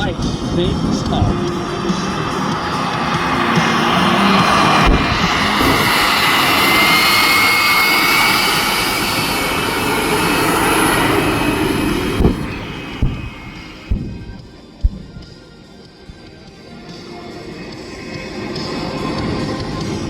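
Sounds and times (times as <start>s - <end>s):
jet engine whine: 0.0s - 20.0s
sharp thumps: 3.1s - 6.2s, 11.8s - 15.4s.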